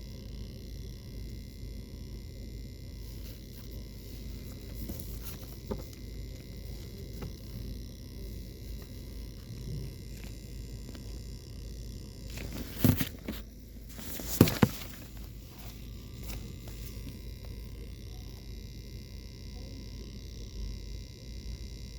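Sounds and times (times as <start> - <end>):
knocks and rustles: 12.3 - 16.9.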